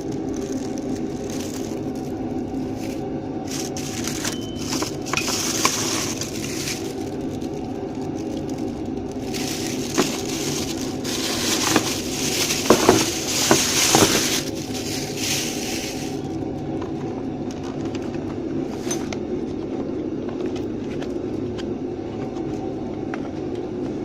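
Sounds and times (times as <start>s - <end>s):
crackling and rustling from handling: 0.0s - 19.0s
heat gun motor humming: 9.1s - 16.2s.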